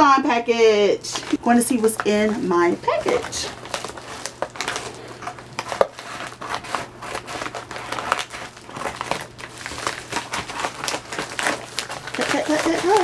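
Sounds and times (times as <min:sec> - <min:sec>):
packaging crinkling and tearing: 0:01.1 - 0:13.0.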